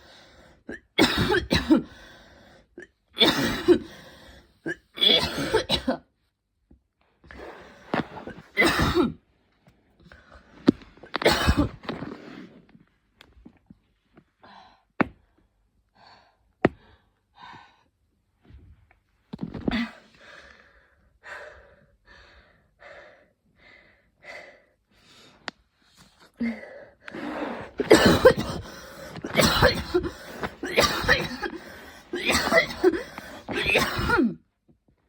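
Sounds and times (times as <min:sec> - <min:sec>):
woman coughing: 0:00.7 - 0:01.9, 0:03.2 - 0:04.0, 0:04.6 - 0:06.1, 0:08.6 - 0:09.2, 0:11.2 - 0:11.8, 0:27.7 - 0:34.4
woman gasping heavy breaths: 0:01.8 - 0:02.7, 0:19.7 - 0:25.4, 0:26.3 - 0:33.7.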